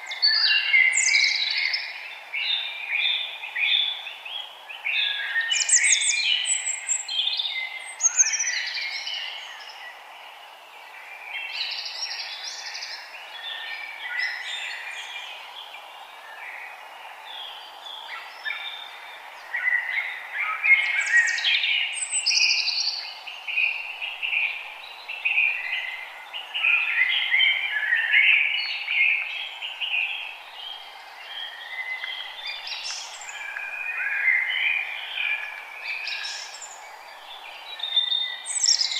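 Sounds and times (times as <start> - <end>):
steady background hiss: 0.0 - 38.9
birds chirping and singing: 5.0 - 9.9, 18.2 - 38.9.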